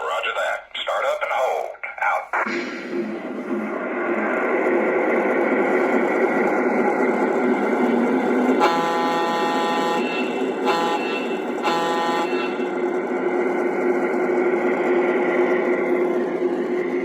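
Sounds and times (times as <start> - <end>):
diesel engine rumble: 0.0 - 17.0
model train horn: 8.4 - 12.9.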